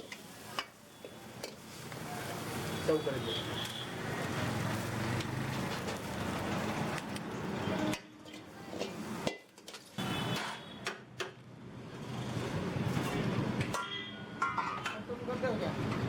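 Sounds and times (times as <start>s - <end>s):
noisy kitchen background: 0.0s - 16.0s
metal cookware clinking: 13.7s - 15.1s.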